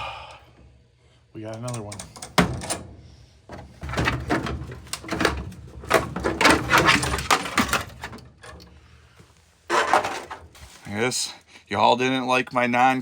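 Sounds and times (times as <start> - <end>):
hard objects clicking and clanking: 3.5 - 8.7.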